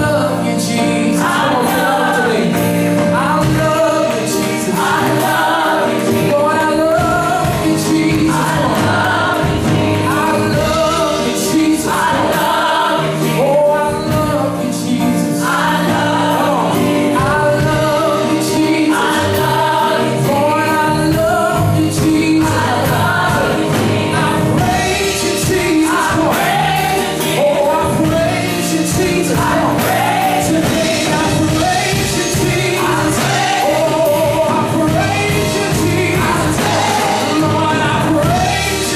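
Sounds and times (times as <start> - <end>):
band accompaniment: 0.0 - 38.9
group singing gospel music: 0.0 - 38.9.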